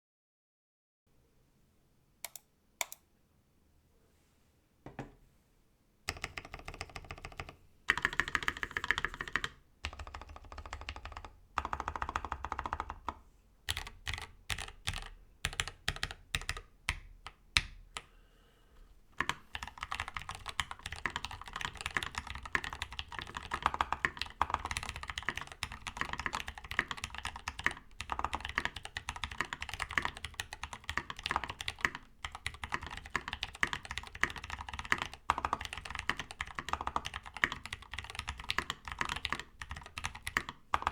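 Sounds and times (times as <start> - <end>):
typing on mechanical keyboard: 6.1 - 18.1, 19.2 - 40.9.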